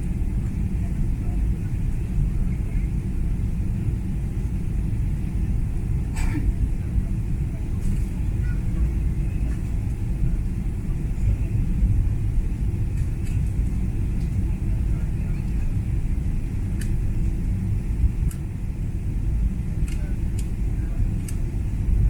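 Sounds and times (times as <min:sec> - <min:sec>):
airliner cabin rumble: 0:00.0 - 0:22.0
faint clicks: 0:16.8 - 0:17.0, 0:19.8 - 0:20.5.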